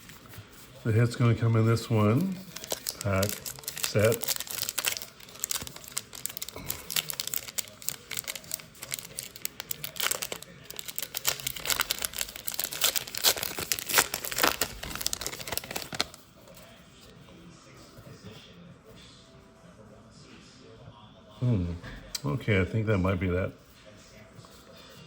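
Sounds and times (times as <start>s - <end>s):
plastic wrapper crinkling: 0.0s - 16.3s
plastic wrapper tearing: 1.8s - 16.2s.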